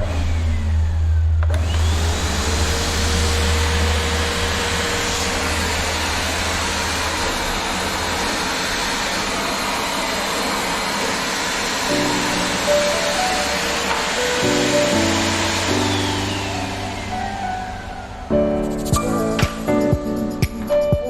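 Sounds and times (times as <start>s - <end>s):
vacuum cleaner running: 0.0s - 20.7s
music: 12.1s - 21.0s.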